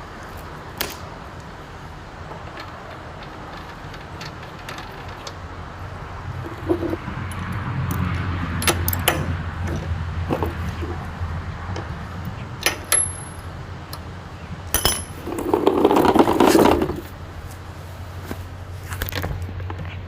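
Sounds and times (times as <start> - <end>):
low steady rumble: 0.0 - 20.0
metal tools clinking: 12.6 - 13.5, 14.7 - 16.0.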